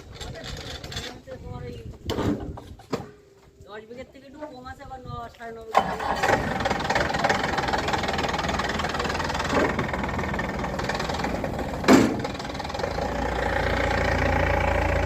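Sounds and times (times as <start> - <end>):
heavy engine running: 5.8 - 15.0
metallic clank: 10.8 - 12.6.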